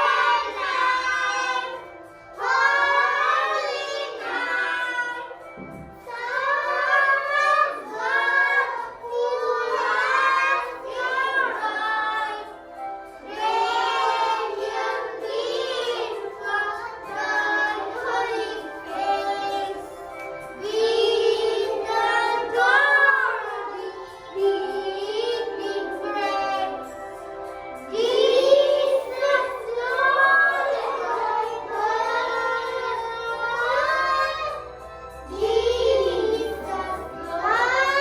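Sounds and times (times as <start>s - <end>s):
young children singing: 0.0s - 38.0s.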